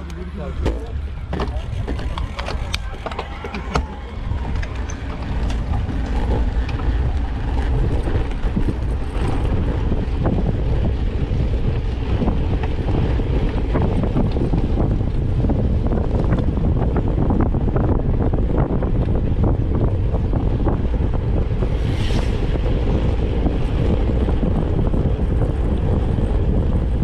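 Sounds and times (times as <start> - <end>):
wind buffeting microphone: 0.0 - 27.0
scattered clicks: 1.4 - 7.2.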